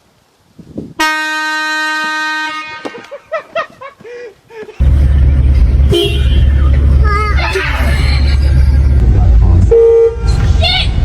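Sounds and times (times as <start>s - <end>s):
air horn blasting: 1.0s - 3.0s, 5.8s - 6.6s
loud deep rumble: 4.8s - 11.0s.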